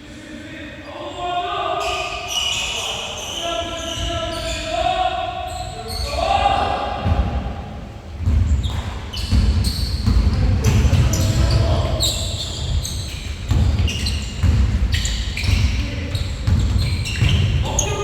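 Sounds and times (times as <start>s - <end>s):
sneakers squeaking: 0.8s - 18.0s
basketballs bouncing on gym floor: 7.0s - 18.0s.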